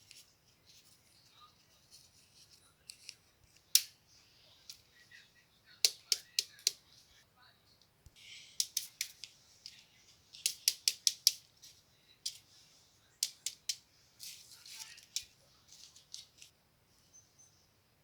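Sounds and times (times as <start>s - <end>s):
paper rustling: 0.0s - 3.8s, 8.6s - 16.6s.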